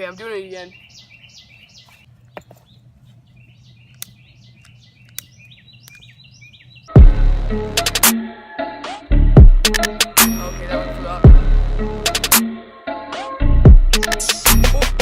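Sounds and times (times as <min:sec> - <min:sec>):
small birds chirping: 0:00.0 - 0:07.0
sharp clicks: 0:03.9 - 0:06.1, 0:09.7 - 0:10.5, 0:14.0 - 0:14.7
loud hip hop music: 0:06.9 - 0:15.0.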